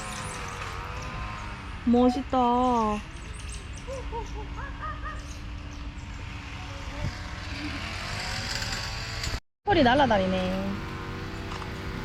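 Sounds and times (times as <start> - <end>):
bird calling: 0.0 - 6.8.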